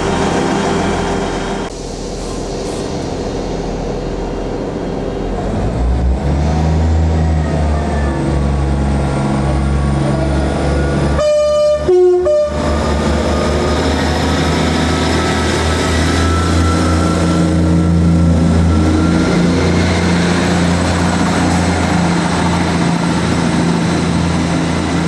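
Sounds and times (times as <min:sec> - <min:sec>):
train engine rumble: 0:00.0 - 0:25.0
two-tone train horn: 0:11.1 - 0:12.9.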